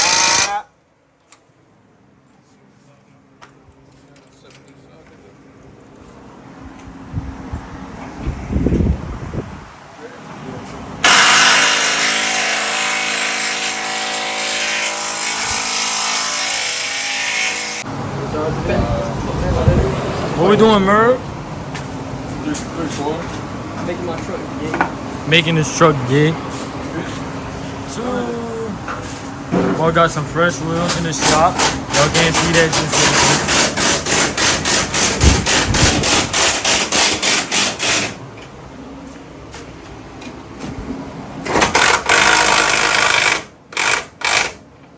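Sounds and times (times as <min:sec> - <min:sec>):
motor whining: 0:00.0 - 0:00.6
rapid hammering: 0:31.1 - 0:38.2.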